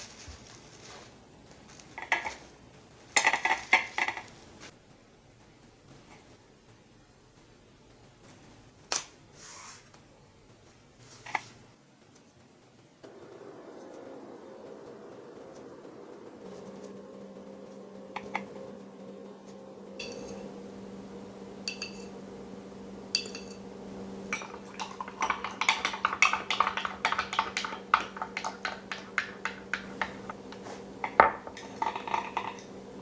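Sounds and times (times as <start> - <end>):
steady low hum: 12.6 - 33.0
dishes and cutlery clinking: 20.0 - 20.6, 21.7 - 22.2, 23.1 - 23.7, 24.3 - 32.9.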